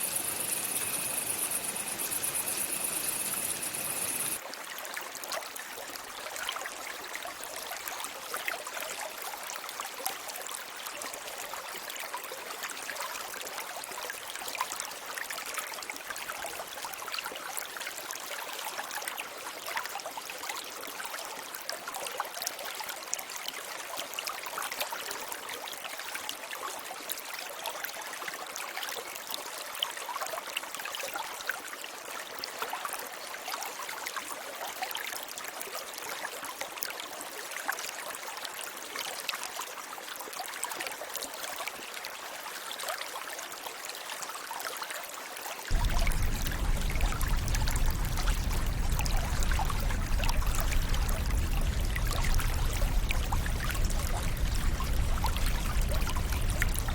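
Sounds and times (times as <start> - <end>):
stream water trickling: 0.0 - 56.9
deep rumble: 45.7 - 56.9.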